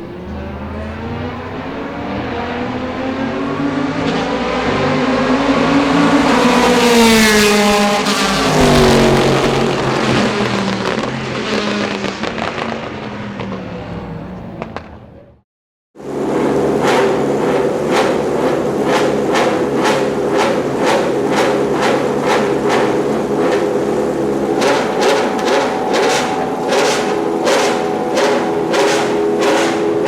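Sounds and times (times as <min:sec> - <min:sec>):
engine running near idle: 0:00.0 - 0:04.0, 0:04.6 - 0:12.0, 0:16.0 - 0:30.0
race car engine at full throttle: 0:00.0 - 0:15.4, 0:16.0 - 0:30.0
exhaust crackles and pops: 0:07.1 - 0:13.8, 0:16.8 - 0:30.0.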